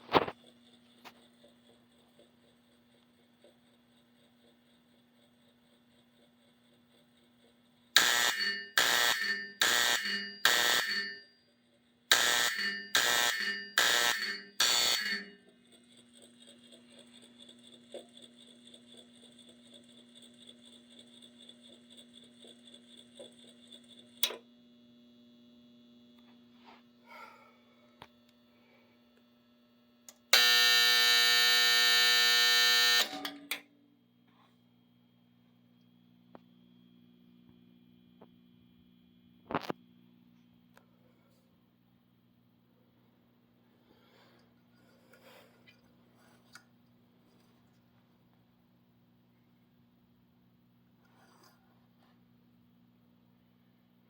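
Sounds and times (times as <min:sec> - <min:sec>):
faint steady hum: 0:00.0 - 0:54.0
fire alarm bell ringing: 0:08.0 - 0:15.5, 0:30.3 - 0:33.7.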